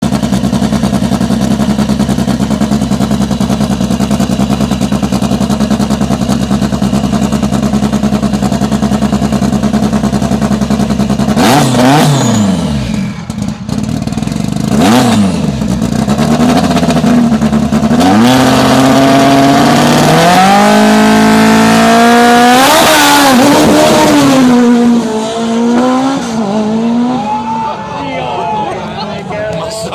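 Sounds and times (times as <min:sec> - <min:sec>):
car engine revving: 0:00.0 - 0:27.4
engine accelerating through upshifts: 0:09.8 - 0:27.2.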